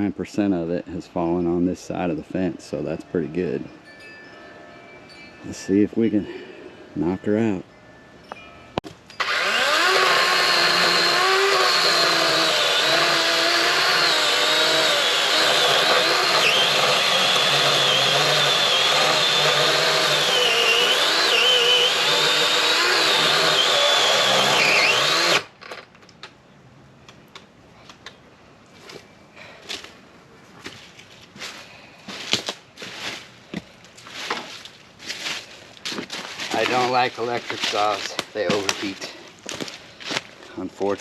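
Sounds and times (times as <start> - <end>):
electric chainsaw cutting wood: 9.1 - 25.5.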